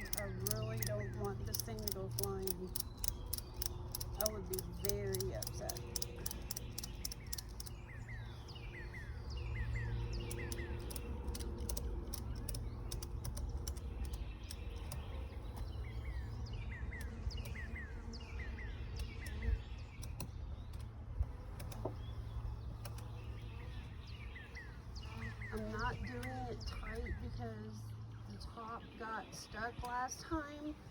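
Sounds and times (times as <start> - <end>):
ratchet strap clicking: 0.0 - 7.9, 10.1 - 15.1
birds chirping: 0.0 - 30.9
steady low hum: 0.0 - 30.9.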